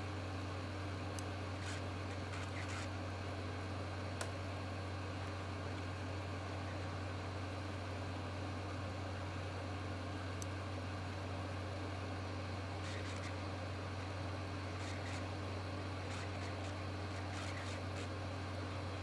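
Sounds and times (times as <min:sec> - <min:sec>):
faint scratches: 0:01.6 - 0:02.9, 0:12.8 - 0:13.4, 0:14.8 - 0:15.3, 0:16.0 - 0:18.1.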